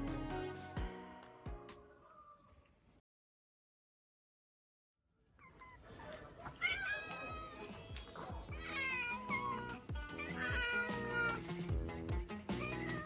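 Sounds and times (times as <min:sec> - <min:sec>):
background music with steady beat: 0:00.0 - 0:01.8, 0:08.0 - 0:13.0
cat meowing: 0:05.4 - 0:11.6, 0:12.5 - 0:13.0.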